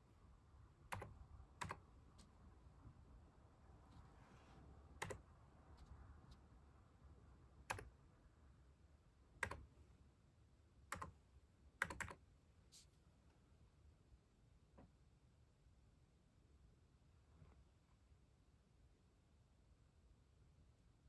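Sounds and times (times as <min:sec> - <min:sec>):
keyboard key clicks: 0:11.8 - 0:12.2.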